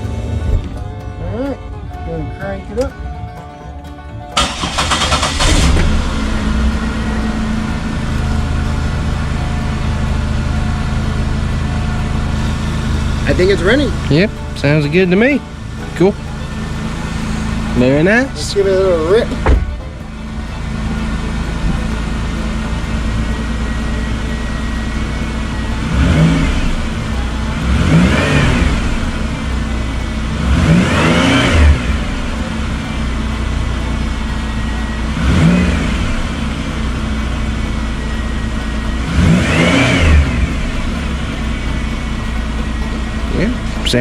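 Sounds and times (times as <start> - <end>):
car engine idling and revving: 0.0 - 44.0.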